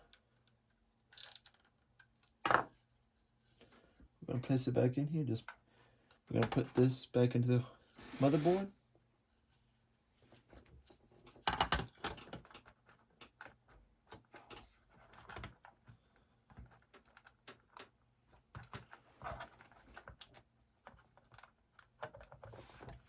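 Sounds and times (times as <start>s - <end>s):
laptop parts clicking and scraping: 11.2s - 23.0s.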